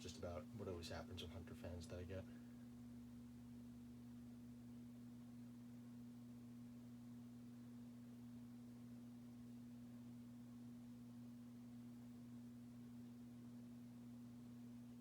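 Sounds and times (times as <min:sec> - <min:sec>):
ceiling fan motor humming: 0:00.0 - 0:15.0.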